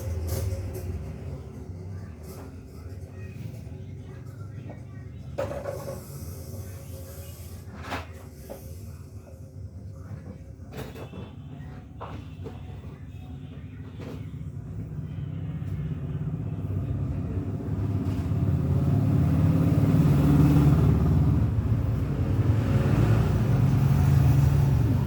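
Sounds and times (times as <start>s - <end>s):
vehicle engine rumbling: 12.6s - 25.0s.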